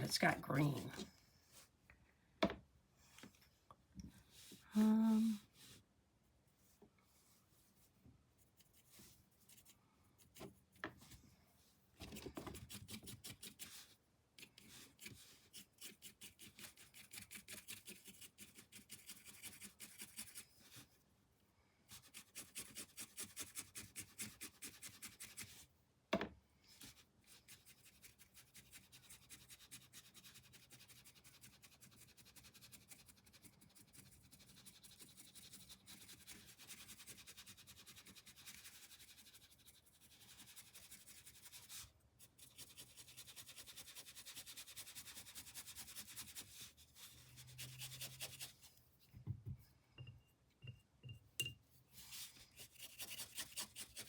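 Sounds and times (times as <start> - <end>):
paintbrush scrubbing on canvas: 6.6 - 11.2, 12.0 - 21.0, 26.7 - 49.1, 52.0 - 54.0.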